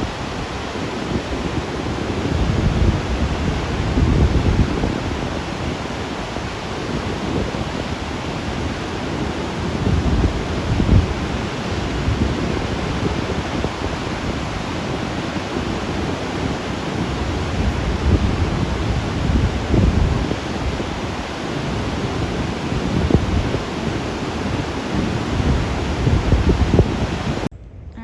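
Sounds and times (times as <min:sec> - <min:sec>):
fast water rushing: 0:00.0 - 0:27.5
wind buffeting microphone: 0:00.0 - 0:28.0.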